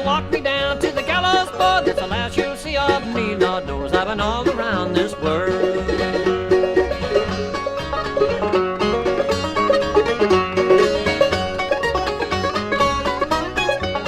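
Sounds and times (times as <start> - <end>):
banjo picking: 0.0 - 14.0
guitar: 0.0 - 14.0
mandolin: 0.0 - 14.0
walking bass line: 0.0 - 14.0.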